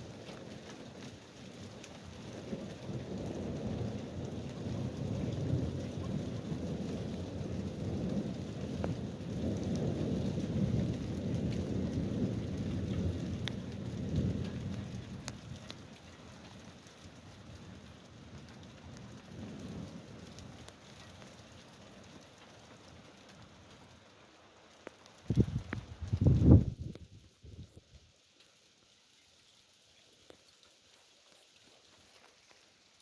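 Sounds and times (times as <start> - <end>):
raindrop ticks: 0.0 - 29.0, 30.1 - 33.0
steady rain: 0.0 - 33.0
thunder rumbling: 2.8 - 15.7, 25.3 - 27.8.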